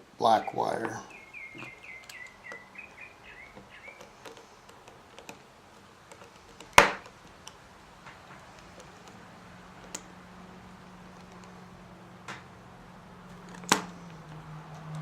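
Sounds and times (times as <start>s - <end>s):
bird chirping: 0.0s - 15.0s
faint ticks and clicks: 1.1s - 12.5s.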